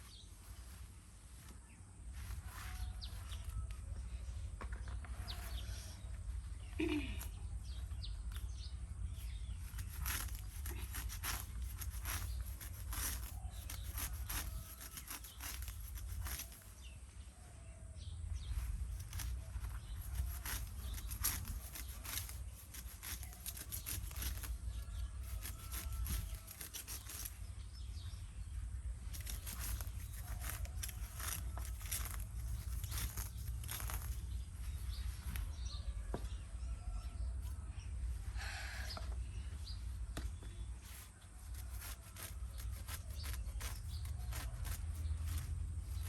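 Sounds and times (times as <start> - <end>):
grass being cut by hand: 9.2 - 16.9, 18.4 - 28.0, 28.9 - 35.6, 40.8 - 46.0.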